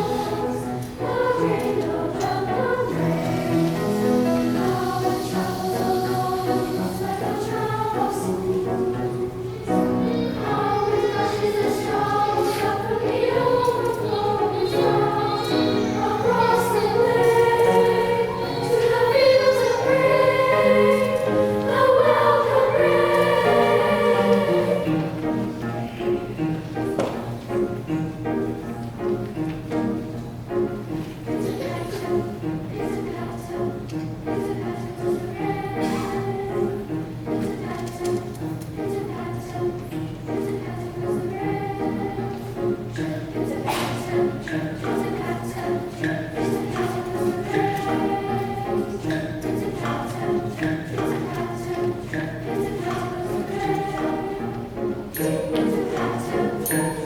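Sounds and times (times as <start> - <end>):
children's choir singing: 0.0 - 57.0.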